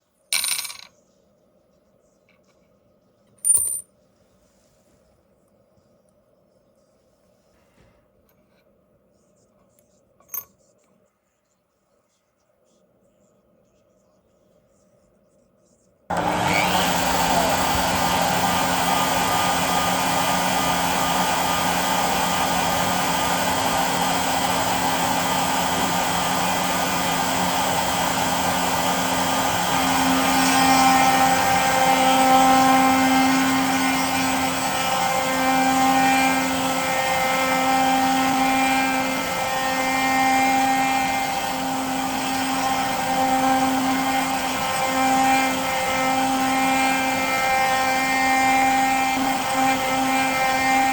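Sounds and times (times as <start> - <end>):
high whine: 16.1 - 39.5
router spindle milling metal: 16.1 - 50.9.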